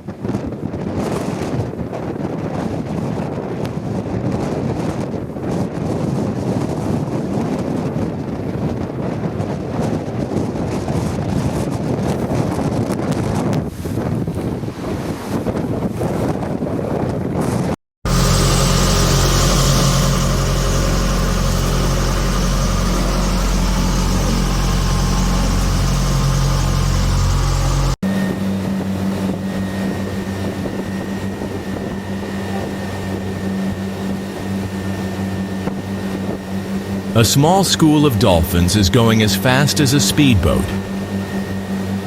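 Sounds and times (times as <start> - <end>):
rushing wind and water: 0.0 - 17.8
boat engine drone: 18.1 - 42.0.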